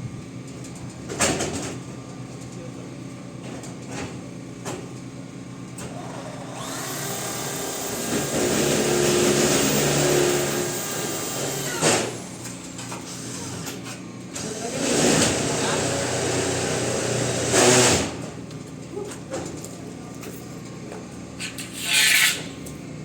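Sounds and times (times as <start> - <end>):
electric motor whining: 6.0 - 12.2.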